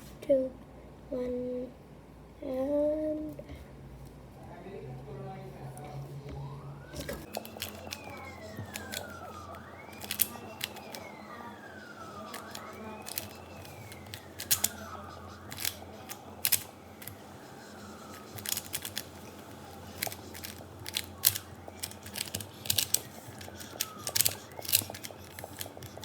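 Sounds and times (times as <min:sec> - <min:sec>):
faint siren wailing: 0:04.9 - 0:26.0
puzzle cube plastic clicks: 0:07.0 - 0:26.0.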